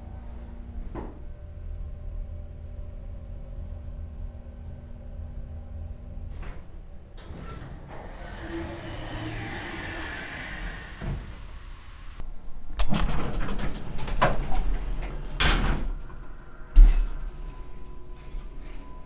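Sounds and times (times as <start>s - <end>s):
elevator doors rattling and sliding: 5.6s - 12.2s, 12.8s - 19.0s
elevator doors shutting thud: 6.2s - 12.2s, 12.8s - 19.0s.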